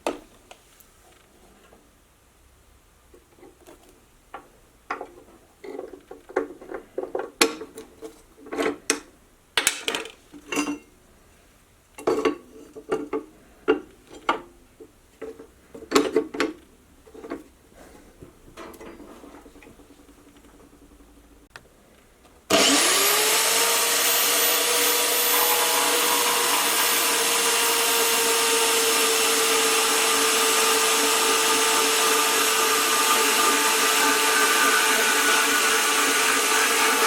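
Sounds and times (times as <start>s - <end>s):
metallic clanks and rattles: 18.5s - 21.5s.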